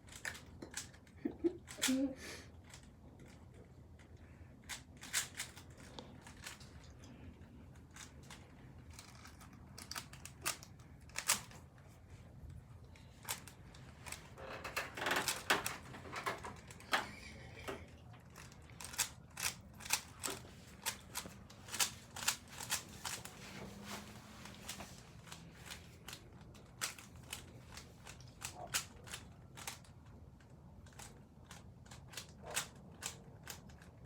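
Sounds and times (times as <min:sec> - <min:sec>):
puzzle cube clicking: 0:18.3 - 0:23.2.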